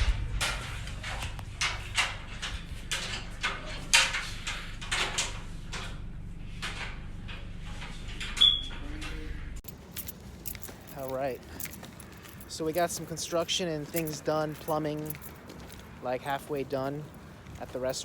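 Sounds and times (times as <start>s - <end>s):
steady low hum: 0.0s - 14.4s
brief high squeak: 8.4s - 8.8s.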